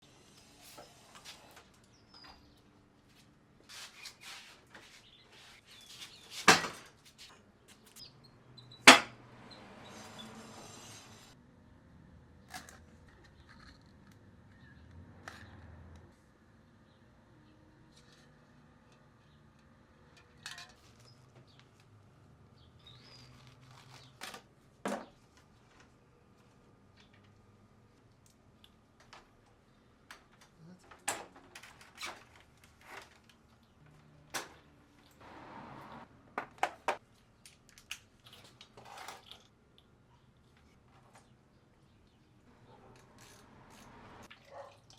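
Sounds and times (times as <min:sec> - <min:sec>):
tools clicking and scraping: 0:42.7 - 0:44.1.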